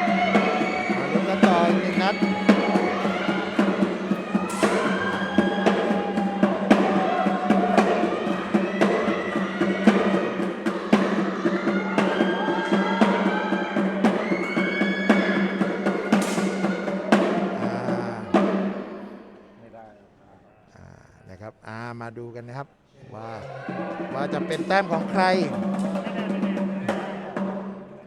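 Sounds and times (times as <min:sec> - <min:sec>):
percussive background music: 0:00.0 - 0:17.9.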